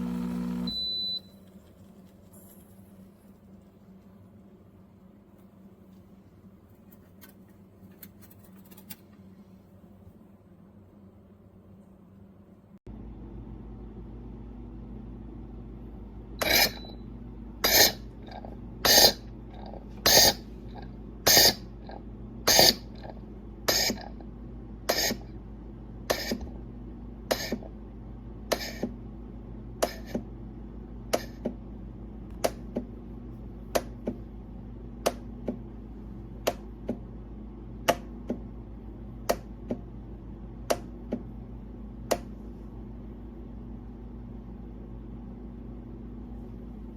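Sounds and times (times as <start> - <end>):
espresso machine hissing spurts: 0.0 - 0.7
espresso machine humming: 0.0 - 1.1.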